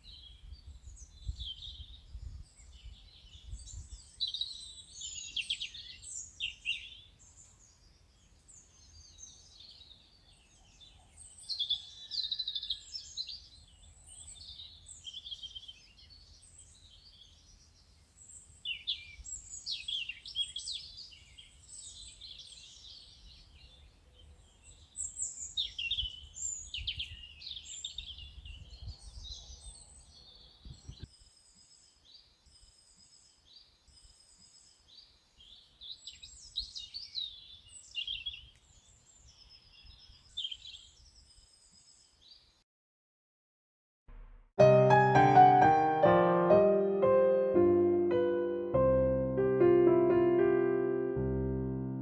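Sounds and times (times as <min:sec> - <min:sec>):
songbirds chirping and warbling: 0:00.0 - 0:42.6.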